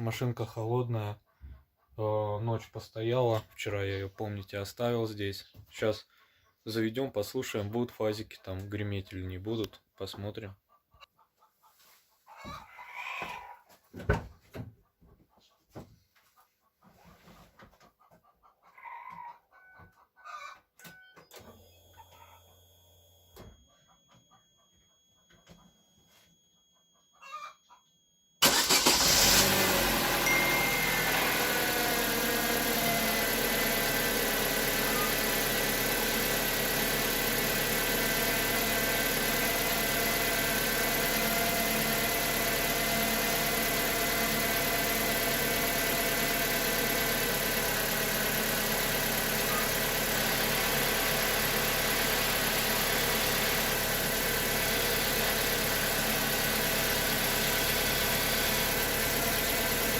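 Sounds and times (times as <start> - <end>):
car engine starting and idling: 28.4 - 59.9.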